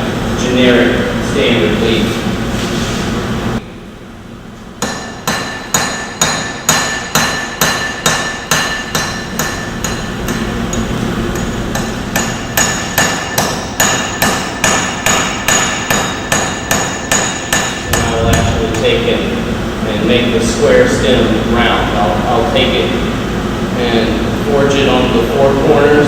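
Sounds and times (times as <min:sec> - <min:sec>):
hammer forging metal on anvil: 0:04.8 - 0:19.0.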